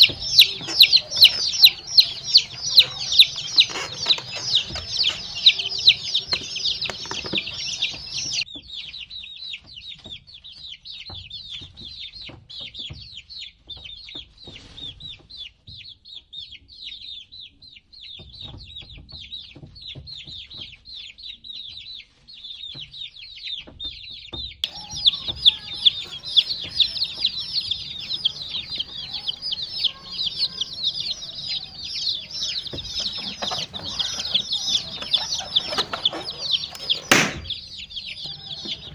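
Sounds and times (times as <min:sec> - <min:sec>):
baby chicks peeping: 0:00.0 - 0:38.9
low thumps: 0:31.4 - 0:38.9.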